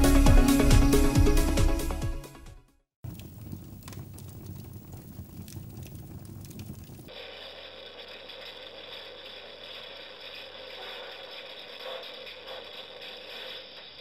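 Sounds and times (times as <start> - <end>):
background music: 0.0 - 2.8
recorded fire crackling: 3.0 - 7.4.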